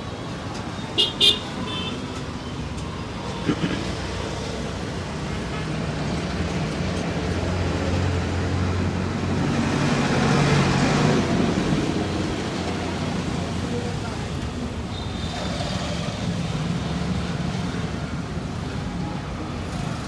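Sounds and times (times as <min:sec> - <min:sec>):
road noise: 0:00.0 - 0:20.0.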